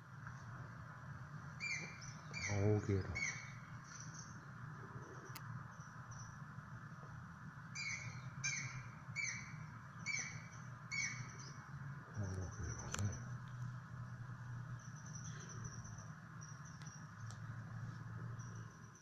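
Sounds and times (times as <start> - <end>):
low hum: 0.0 - 19.0
woodpecker whistled calls: 1.6 - 4.4, 7.7 - 11.6.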